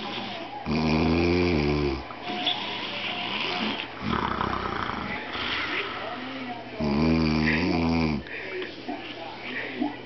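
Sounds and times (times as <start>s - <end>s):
man snoring heavily: 4.0s - 5.1s
noisy breath: 5.0s - 6.5s, 7.4s - 10.0s.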